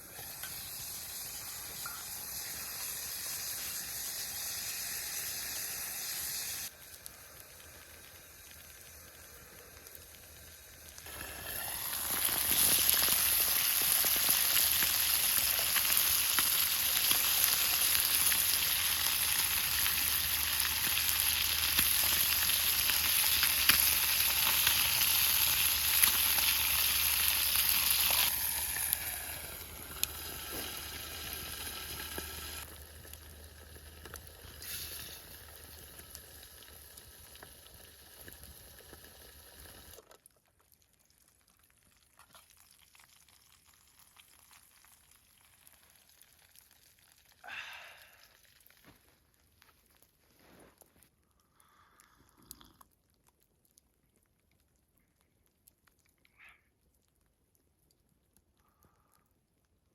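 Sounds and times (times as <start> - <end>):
fish sizzling over a fire: 0.0 - 40.0, 42.4 - 49.5.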